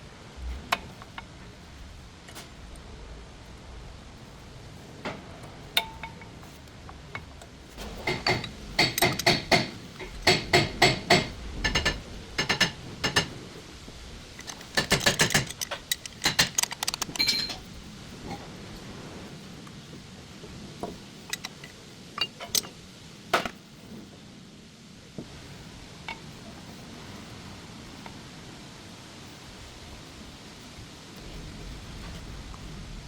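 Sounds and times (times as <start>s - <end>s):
metal clinking and tapping: 5.0s - 13.4s, 14.4s - 17.7s, 20.8s - 22.8s.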